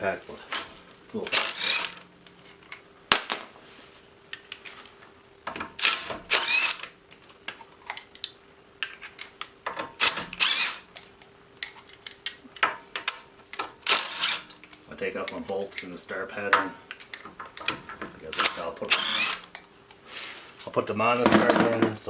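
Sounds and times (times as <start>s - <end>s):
impact wrench spinning: 1.3s - 2.0s, 5.8s - 6.8s, 10.0s - 10.9s, 18.9s - 19.5s.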